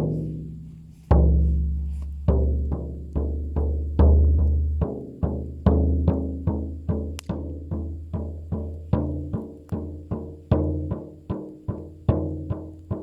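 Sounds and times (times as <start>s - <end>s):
frame drum booming beat: 0.0s - 13.0s.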